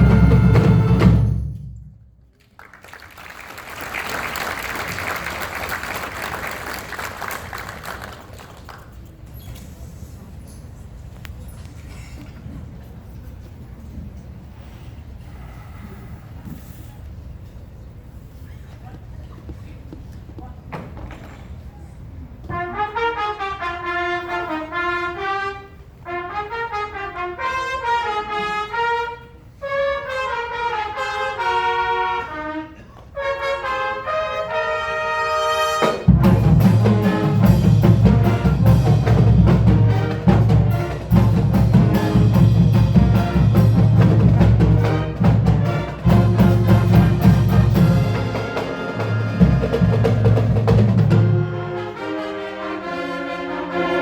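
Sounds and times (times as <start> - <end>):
brass melody: 0.0 - 1.7, 22.4 - 54.0
heavy low drums: 0.0 - 1.9, 36.0 - 51.9
marching band music: 0.0 - 1.9, 22.4 - 54.0.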